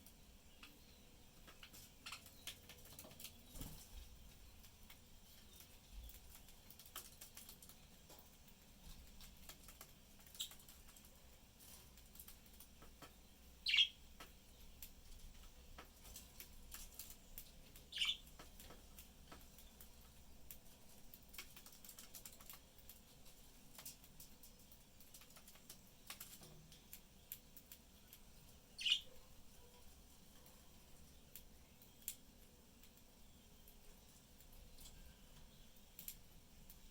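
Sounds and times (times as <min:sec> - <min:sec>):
budgerigar high chirps: 0:13.6 - 0:14.0, 0:17.9 - 0:18.2, 0:28.8 - 0:29.2.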